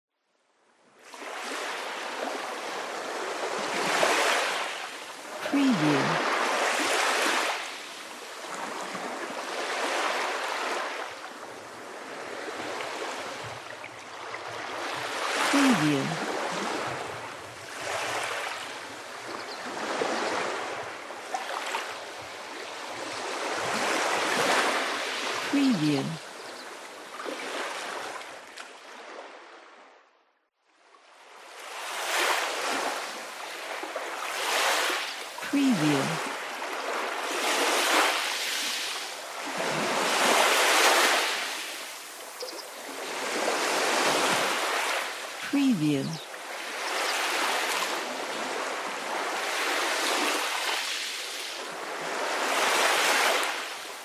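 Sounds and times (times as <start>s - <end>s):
sea waves washing in: 1.0s - 26.4s, 31.3s - 54.0s
faint bird chirps: 42.4s - 42.8s.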